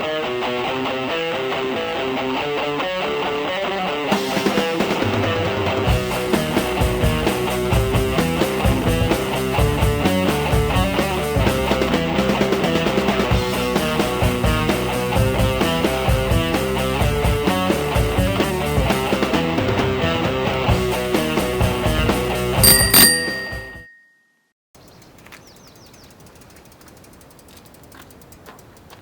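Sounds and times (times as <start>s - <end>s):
rock music with guitar: 0.0s - 23.1s
bass and drums: 4.1s - 23.5s.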